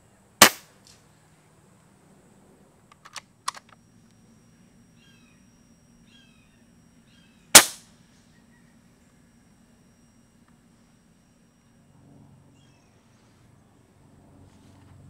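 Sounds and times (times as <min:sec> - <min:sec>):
air rifle shot: 0:00.4 - 0:00.7, 0:07.6 - 0:07.8.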